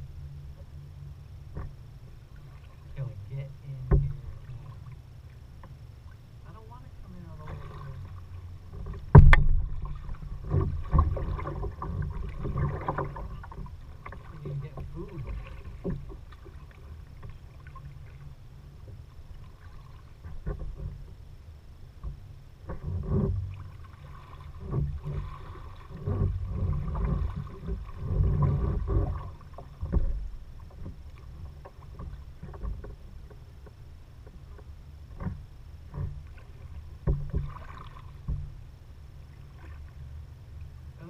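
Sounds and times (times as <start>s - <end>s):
paddle strokes splashing in water: 1.4s - 21.4s, 22.0s - 41.0s
sharp knocks: 8.8s - 9.8s.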